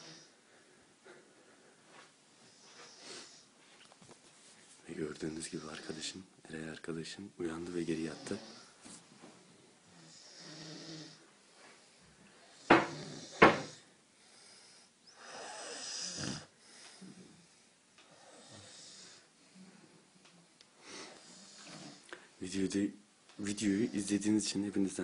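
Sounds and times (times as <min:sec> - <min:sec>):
person snoring: 0:10.0 - 0:11.2, 0:15.2 - 0:17.3.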